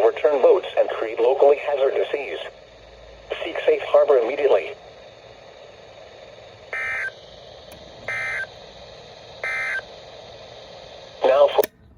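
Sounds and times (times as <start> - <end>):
buzzy data bursts: 6.5 - 7.2, 8.0 - 8.6, 9.2 - 9.9.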